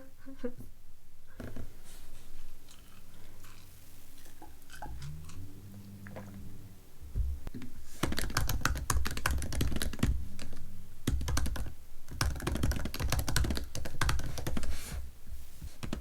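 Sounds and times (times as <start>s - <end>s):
fast typing on keyboard: 8.0s - 14.8s.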